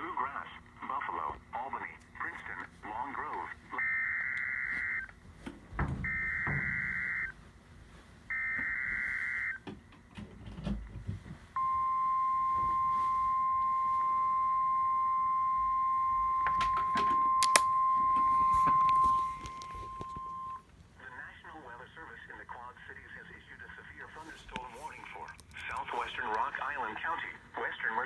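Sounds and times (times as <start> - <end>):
static clicks: 0.6 - 7.4, 8.3 - 14.2, 15.4 - 20.7, 24.5 - 26.8
rasping data tones: 2.4 - 5.2, 5.8 - 7.4, 8.3 - 9.6, 11.6 - 20.6.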